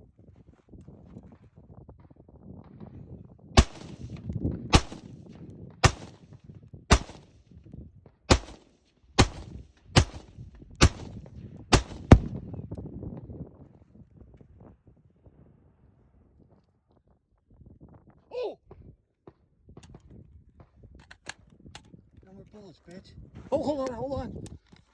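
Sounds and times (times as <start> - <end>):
gunshots with echo: 3.6 - 5.2, 5.8 - 6.3, 6.9 - 7.3, 8.3 - 12.4.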